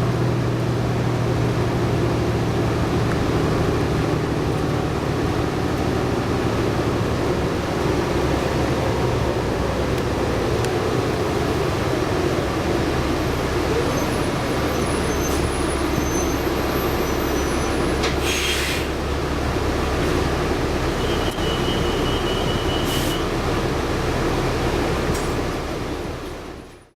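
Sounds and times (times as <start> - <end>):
bus diesel engine hum: 0.0 - 26.9
short hiss: 18.2 - 18.9.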